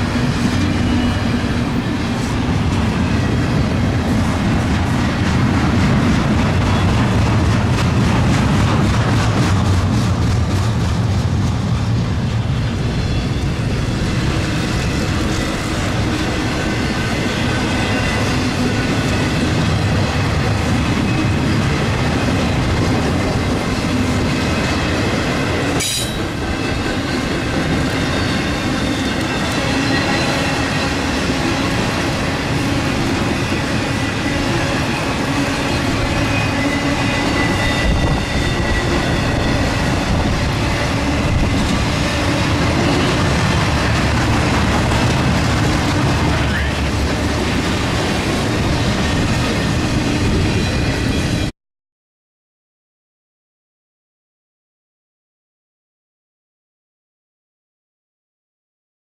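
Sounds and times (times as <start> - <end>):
train wheels rumbling on rail: 0.0 - 51.5
high squealing tones: 34.0 - 43.3.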